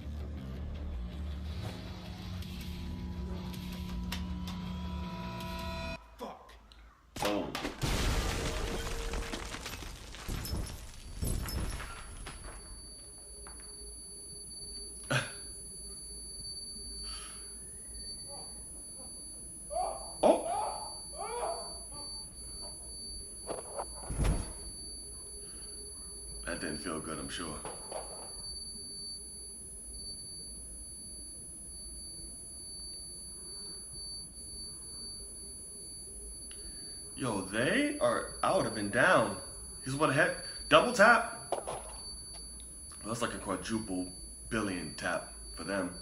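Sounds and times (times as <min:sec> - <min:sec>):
low hum: 0:00.0 - 0:06.2
high-pitched ringing tone: 0:08.7 - 0:46.0.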